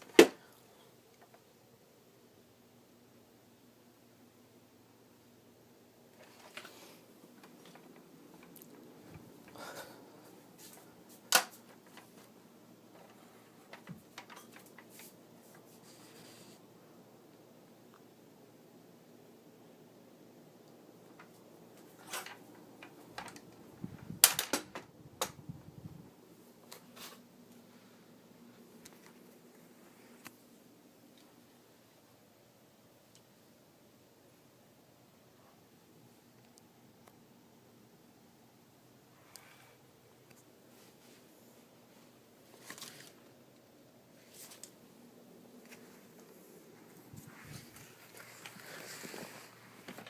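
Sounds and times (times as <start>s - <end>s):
soft rustling: 6.1s - 16.7s, 26.4s - 31.5s, 39.6s - 50.0s.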